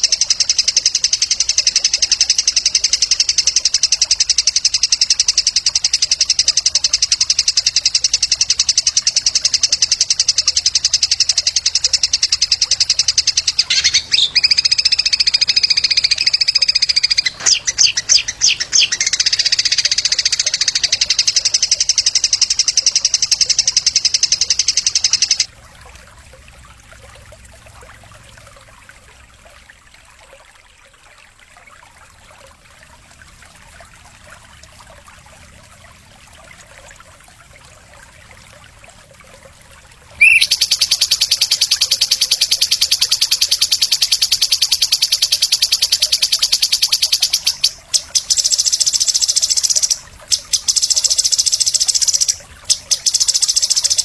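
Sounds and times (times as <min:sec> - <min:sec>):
songbird trilling: 0:00.0 - 0:25.5, 0:40.2 - 0:54.0.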